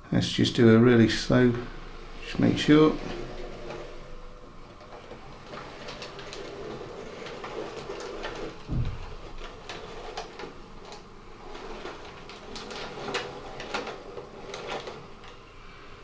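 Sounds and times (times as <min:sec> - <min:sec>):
wheels clicking over rail joints: 0:00.4 - 0:16.0
dull low thump: 0:08.7 - 0:09.4.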